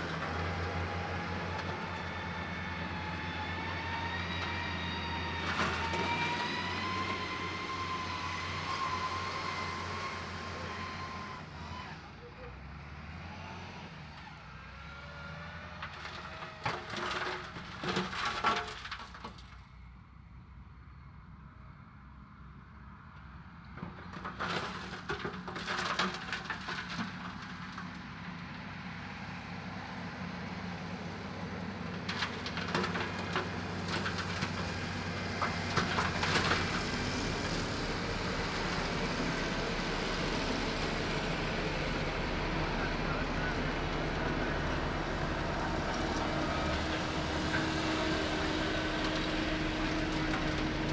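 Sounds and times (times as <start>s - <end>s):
diesel machinery engine running: 0.0s - 19.5s, 23.7s - 50.9s
clattering and scraping: 15.8s - 19.6s, 24.0s - 28.0s, 32.0s - 37.7s.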